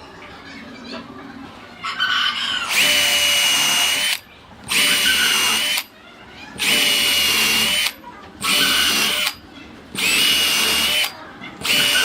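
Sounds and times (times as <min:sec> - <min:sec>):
electric drill whining: 0:02.7 - 0:05.9, 0:06.6 - 0:09.4, 0:10.0 - 0:12.0.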